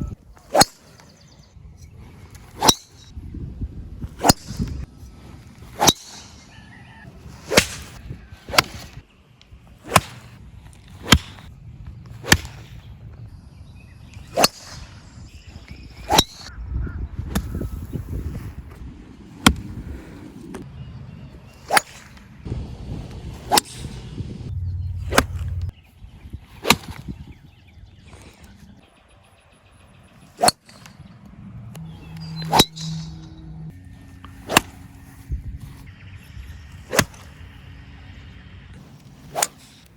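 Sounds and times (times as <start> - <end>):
golf clubs striking balls: 2.2 - 3.1, 4.2 - 6.5, 7.3 - 13.2, 14.1 - 16.5, 23.5 - 25.7, 30.4 - 35.2, 38.7 - 39.8.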